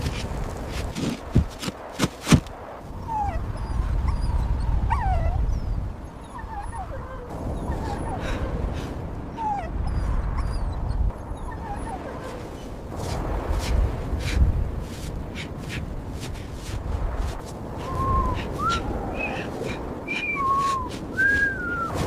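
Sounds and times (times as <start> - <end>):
dog whimpering: 3.1 - 8.7, 9.3 - 12.6.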